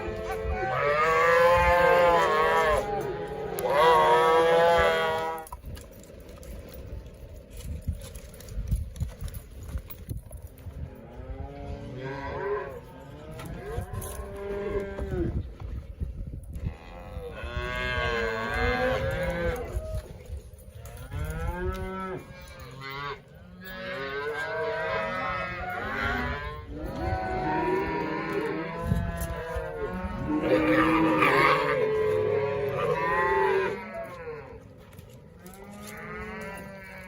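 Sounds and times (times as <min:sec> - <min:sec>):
cattle mooing and bawling: 0:00.0 - 0:05.5, 0:16.6 - 0:20.0, 0:20.9 - 0:34.8, 0:35.4 - 0:37.0.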